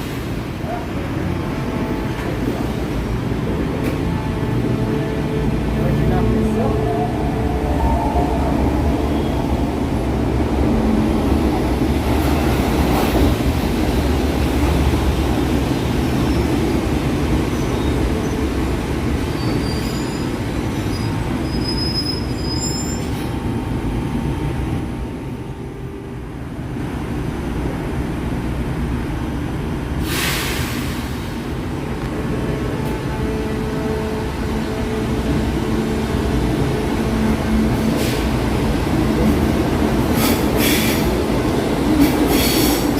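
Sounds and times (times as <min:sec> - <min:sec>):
train rumbling: 0:00.0 - 0:42.9
high wheel squeals: 0:19.4 - 0:23.2
short loud hiss: 0:30.0 - 0:31.4.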